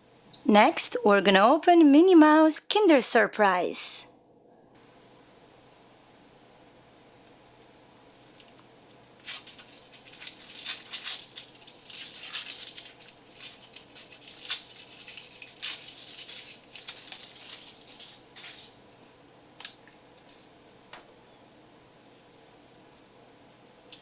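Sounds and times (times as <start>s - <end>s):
foil wrapper crinkling: 8.1s - 18.9s.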